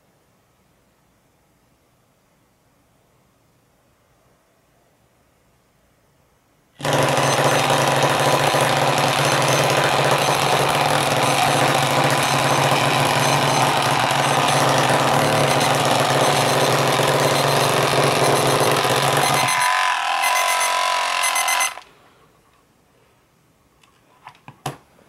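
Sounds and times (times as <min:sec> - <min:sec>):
vibrating alarm clock buzzing: 0:06.8 - 0:21.9.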